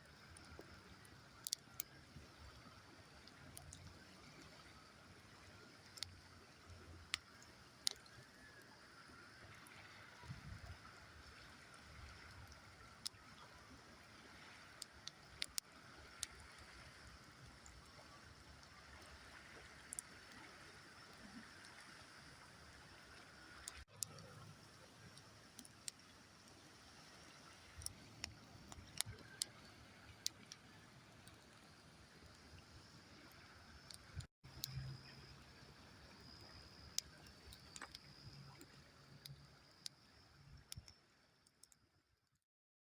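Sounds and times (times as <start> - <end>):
campfire crackling: 0.0 - 34.8, 36.6 - 41.8
campfire crackling pops: 0.3 - 4.6, 5.8 - 8.2, 14.8 - 16.7, 27.6 - 29.6, 30.2 - 31.7.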